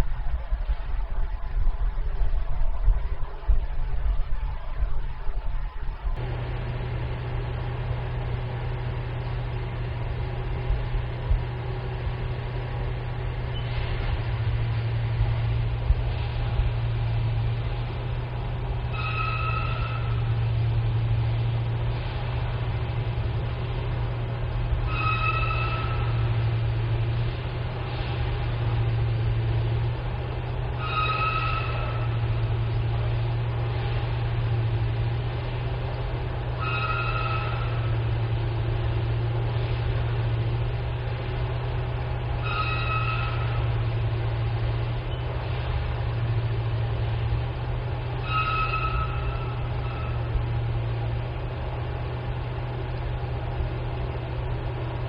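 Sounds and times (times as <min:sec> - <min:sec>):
low drone: 0:00.0 - 0:55.0
low grinding rumble: 0:00.0 - 0:55.0
short high squeak: 0:19.0 - 0:20.2, 0:24.9 - 0:26.2, 0:30.8 - 0:32.1, 0:36.6 - 0:37.9, 0:42.4 - 0:43.7, 0:48.2 - 0:50.3
high squeak: 0:48.2 - 0:50.2.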